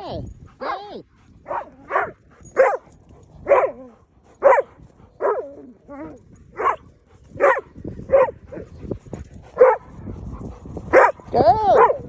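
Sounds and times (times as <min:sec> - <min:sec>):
dog barking: 0:01.5 - 0:02.8, 0:03.5 - 0:03.8, 0:04.4 - 0:05.5, 0:06.6 - 0:06.8, 0:07.4 - 0:08.6, 0:09.6 - 0:09.9, 0:10.9 - 0:11.2, 0:11.8 - 0:12.0.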